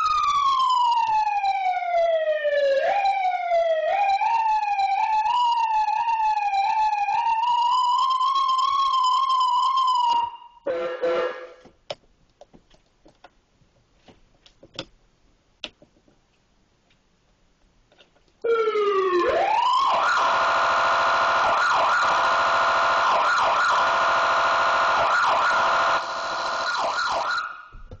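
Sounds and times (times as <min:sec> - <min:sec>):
fire truck siren: 0:00.0 - 0:11.6, 0:18.4 - 0:27.8.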